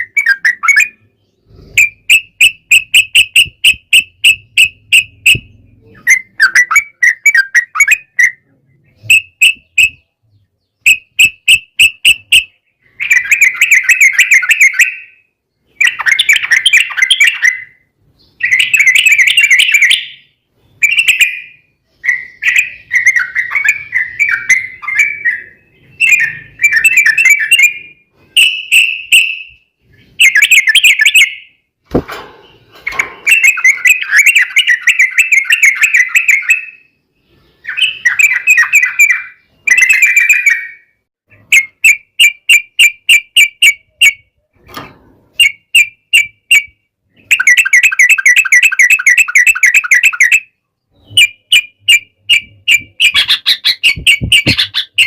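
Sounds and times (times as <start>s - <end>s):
sharp knock: 31.9s - 33.3s.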